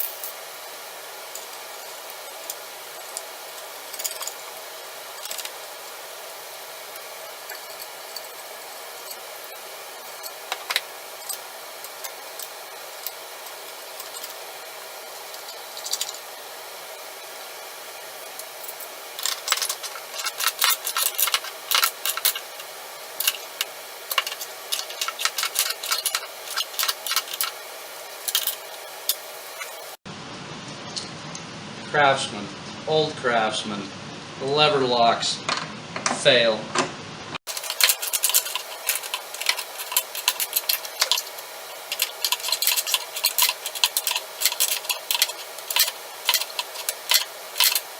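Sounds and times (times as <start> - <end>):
steady hiss: 0.0 - 30.0, 37.4 - 47.9
sharp clicks and clatter: 15.3 - 16.3, 18.3 - 27.6, 28.2 - 29.9, 37.5 - 47.9.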